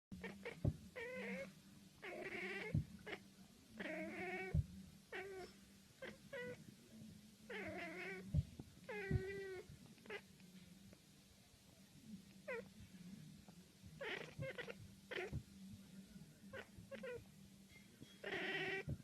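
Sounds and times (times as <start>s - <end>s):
cat meowing: 0.2s - 3.2s, 3.8s - 6.6s, 7.5s - 8.3s, 8.9s - 10.2s, 14.0s - 15.4s, 16.5s - 17.2s, 18.2s - 19.0s.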